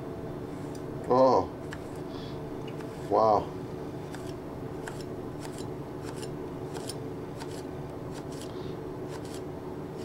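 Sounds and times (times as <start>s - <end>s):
knife slicing pepper on board: 4.1s - 9.4s.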